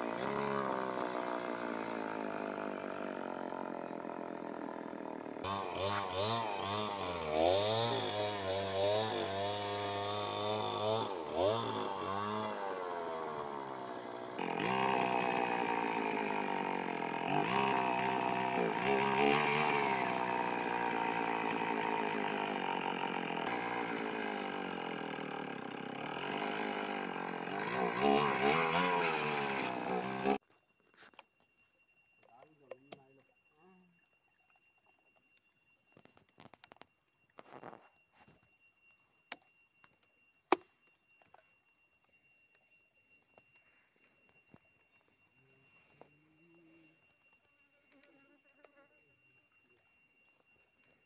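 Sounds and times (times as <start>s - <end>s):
chainsaw engine revving: 0.0s - 30.4s.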